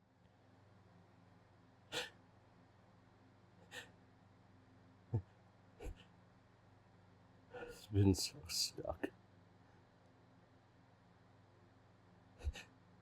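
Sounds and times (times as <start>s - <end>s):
man sniffing sharply: 1.9s - 2.2s, 12.4s - 12.7s.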